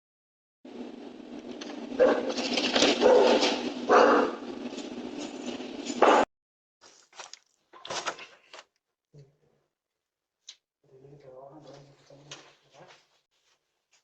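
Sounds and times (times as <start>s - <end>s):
dog barking: 2.0s - 2.4s, 3.0s - 4.5s.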